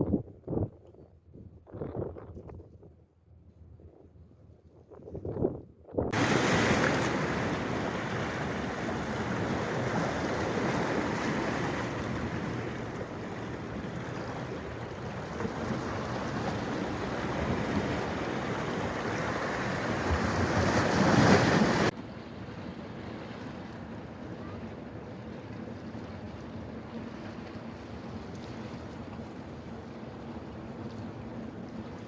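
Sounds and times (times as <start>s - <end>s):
rushing water: 6.1s - 22.0s.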